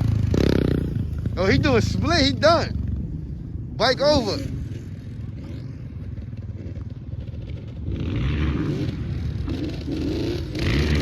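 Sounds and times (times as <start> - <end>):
off-road vehicle engine revving: 0.0 - 2.9, 6.6 - 11.0.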